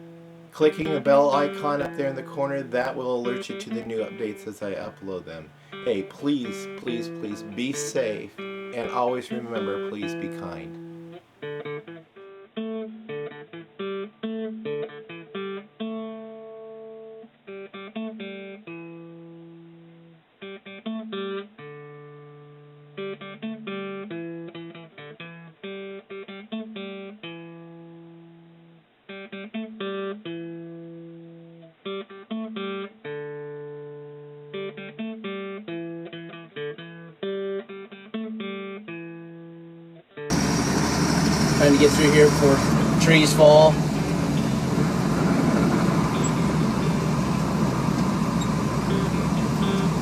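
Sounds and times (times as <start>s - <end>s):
acoustic guitar plucking: 0.0s - 15.6s, 40.3s - 50.0s.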